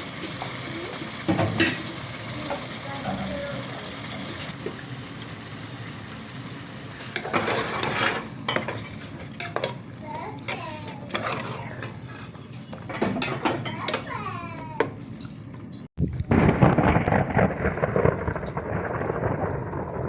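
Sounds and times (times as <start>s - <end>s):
food sizzling in a pan: 0.0s - 12.6s
metal utensil scraping a pan: 7.1s - 9.8s, 10.5s - 14.1s.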